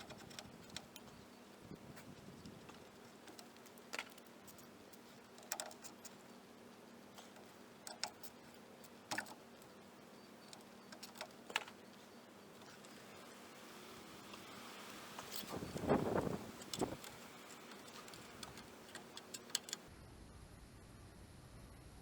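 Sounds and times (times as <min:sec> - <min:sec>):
metal tools clicking: 0:00.0 - 0:01.3, 0:02.4 - 0:06.4, 0:07.1 - 0:09.8, 0:15.2 - 0:19.9.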